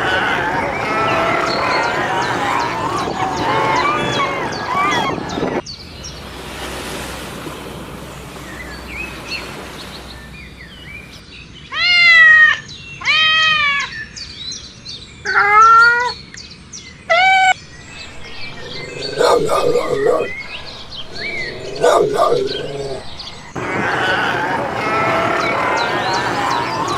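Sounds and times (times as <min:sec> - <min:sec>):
small birds chirping: 0:00.0 - 0:06.3, 0:14.0 - 0:26.9
cat meowing: 0:15.3 - 0:16.2, 0:18.5 - 0:26.9.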